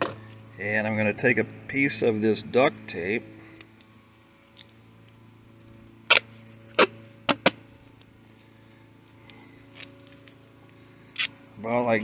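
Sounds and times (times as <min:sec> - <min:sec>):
steady low hum: 0:00.0 - 0:12.0
duct tape ripping: 0:06.0 - 0:07.6, 0:11.1 - 0:11.4.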